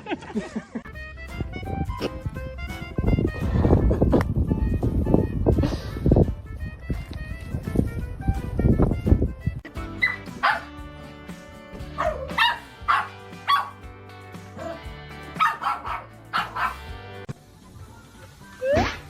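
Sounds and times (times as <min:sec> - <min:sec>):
background music: 0:00.4 - 0:19.0
dog yipping and barking: 0:10.0 - 0:10.7, 0:12.0 - 0:13.8, 0:15.4 - 0:16.9.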